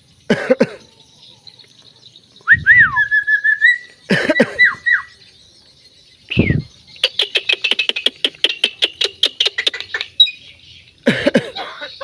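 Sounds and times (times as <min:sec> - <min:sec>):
bird mimicking a cough: 0:00.3 - 0:00.9, 0:04.1 - 0:04.9, 0:11.1 - 0:12.0
myna whistling: 0:02.4 - 0:05.1, 0:06.3 - 0:09.4.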